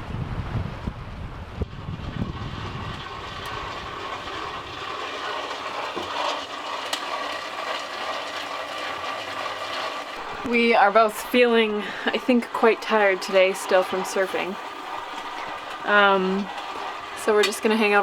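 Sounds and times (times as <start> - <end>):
wind noise on microphone: 0.0 - 5.0
mechanical hum with whine: 0.0 - 18.0.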